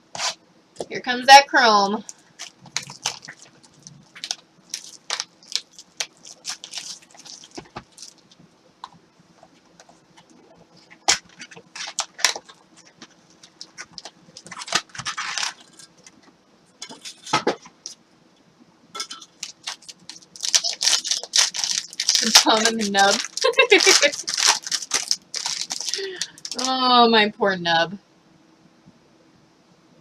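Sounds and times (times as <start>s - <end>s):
wrappers crinkling and tearing: 2.0s - 8.4s, 9.7s - 16.2s, 19.0s - 26.7s.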